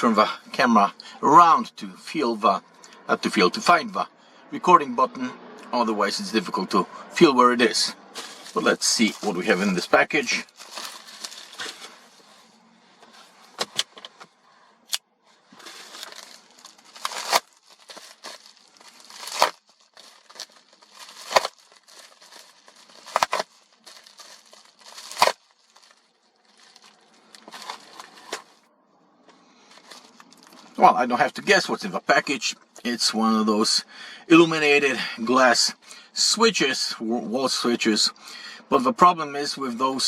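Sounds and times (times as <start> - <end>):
wrapping crinkling: 8.1 - 14.1, 15.3 - 28.6, 29.7 - 30.8
packaging ripping: 8.2 - 12.1, 15.5 - 28.6.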